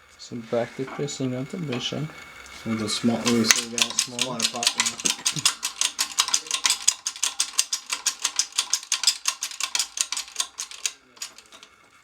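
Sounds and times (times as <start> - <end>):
ratchet wrench clicking: 2.7 - 11.8.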